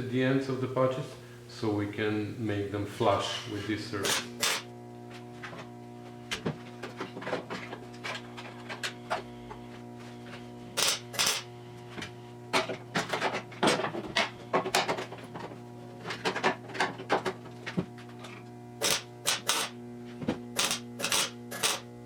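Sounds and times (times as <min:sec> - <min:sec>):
welding crackle: 0:04.1 - 0:04.7, 0:10.8 - 0:11.6, 0:18.8 - 0:19.8, 0:20.6 - 0:21.9.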